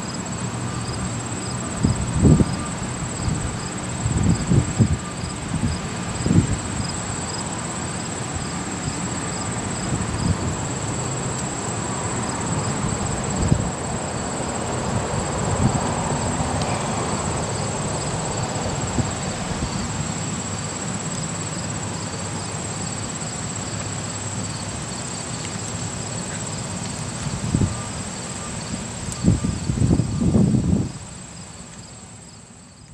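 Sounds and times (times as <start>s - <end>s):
insects chirping: 0.0s - 32.9s
wind buffeting microphone: 1.8s - 7.0s, 9.8s - 10.7s, 12.6s - 20.0s, 29.1s - 31.0s.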